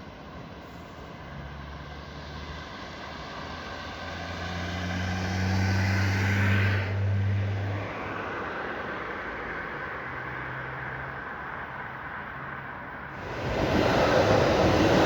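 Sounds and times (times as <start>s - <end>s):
metro train humming: 13.1s - 15.0s
train hiss: 13.1s - 15.0s.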